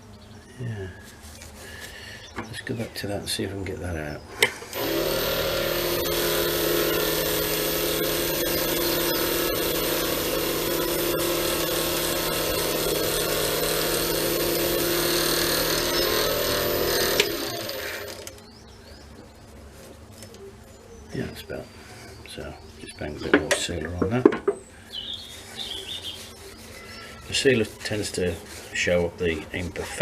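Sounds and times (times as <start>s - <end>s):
wood lathe motor humming: 4.7s - 18.4s.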